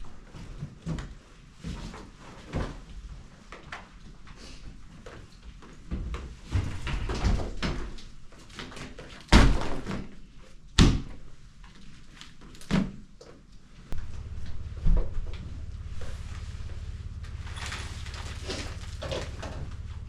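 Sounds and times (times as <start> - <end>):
knocks and shuffling: 13.7 - 20.0.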